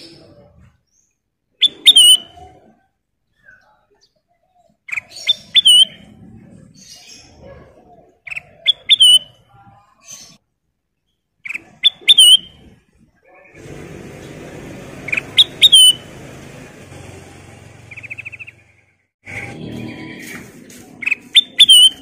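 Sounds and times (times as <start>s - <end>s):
bulbul whistling song: 0.0s - 2.5s, 4.9s - 6.1s, 8.3s - 9.4s, 11.5s - 12.7s, 15.0s - 16.1s, 17.9s - 19.6s, 21.0s - 22.0s.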